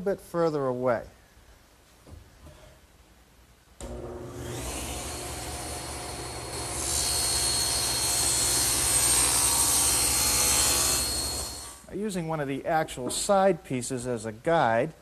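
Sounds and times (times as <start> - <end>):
saw blade cutting wood: 3.8 - 11.8
table saw running: 3.8 - 11.8.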